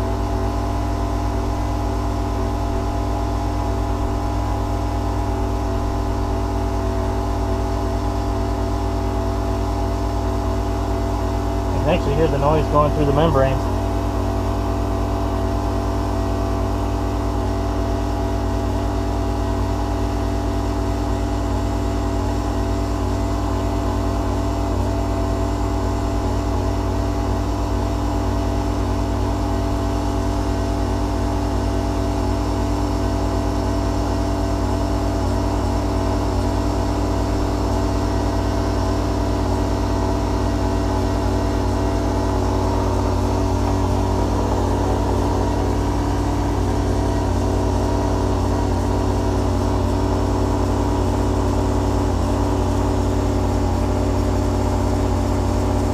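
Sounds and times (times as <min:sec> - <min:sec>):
motor and pump running: 0:00.0 - 0:55.9.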